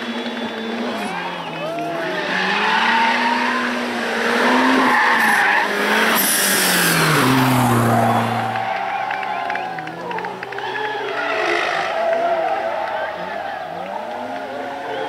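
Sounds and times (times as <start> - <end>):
car engine revving high: 0.0 - 15.0
tyres squealing: 0.0 - 15.0.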